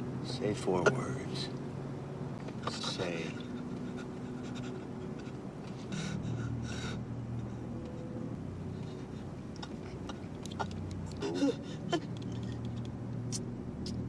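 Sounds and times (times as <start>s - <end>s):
low steady hum: 0.0s - 14.0s
man breathing heavily: 2.7s - 10.2s, 11.1s - 12.5s.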